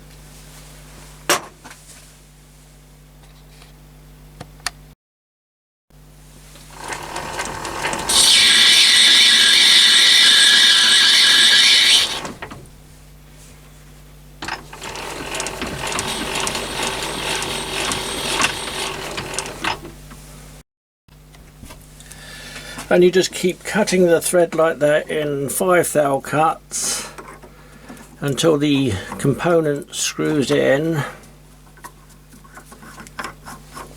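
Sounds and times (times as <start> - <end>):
lathe running: 6.7 - 12.6, 14.4 - 19.9
gear whine: 6.7 - 12.7, 14.4 - 19.9.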